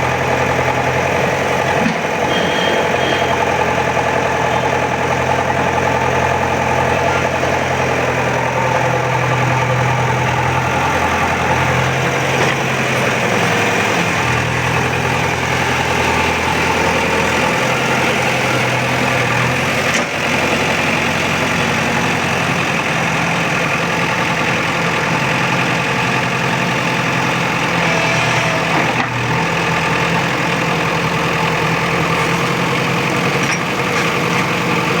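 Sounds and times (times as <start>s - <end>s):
earthmoving machine diesel engine: 0.0s - 35.0s.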